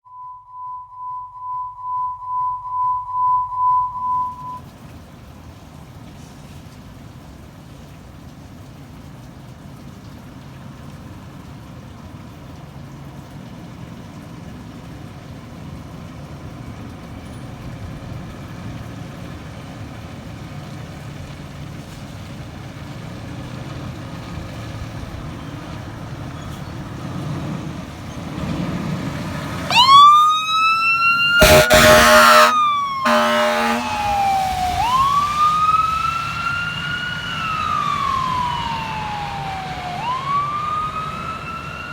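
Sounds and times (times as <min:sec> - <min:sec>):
low traffic rumble: 0:04.6 - 0:41.9
fire engine siren wailing: 0:19.3 - 0:41.9
air horn blasts: 0:31.4 - 0:34.5.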